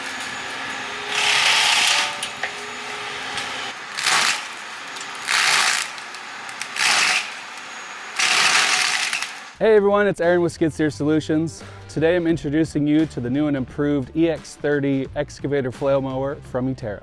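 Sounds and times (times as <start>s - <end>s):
flail mower running: 0.0s - 9.6s
rasping shredding bursts: 0.0s - 9.6s.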